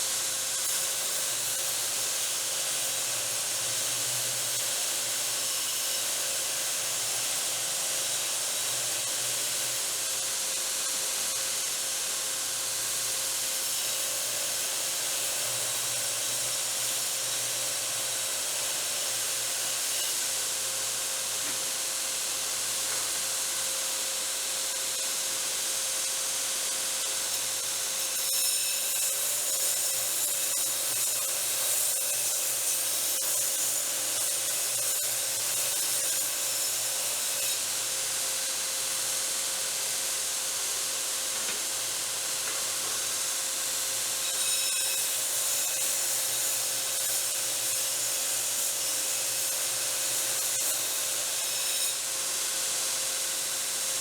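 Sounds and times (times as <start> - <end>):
belt grinder grinding steel: 27.2 - 37.8, 43.0 - 52.1.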